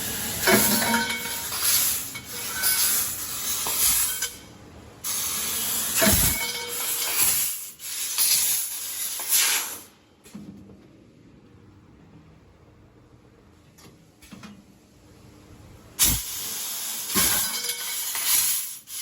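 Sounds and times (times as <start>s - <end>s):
laser cutter gas hissing: 5.0s - 9.9s, 16.0s - 19.0s.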